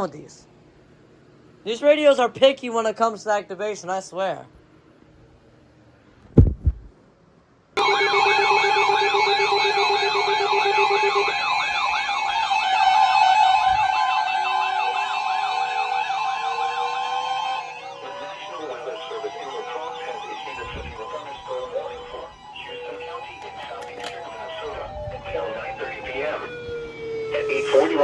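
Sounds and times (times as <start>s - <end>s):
low thump: 6.4s - 6.9s
lower beeping tone: 7.8s - 11.6s, 24.2s - 28.0s
steady alert tones: 7.8s - 12.4s
warbling siren alarm: 7.8s - 28.0s
slowly rising tone: 24.2s - 28.0s.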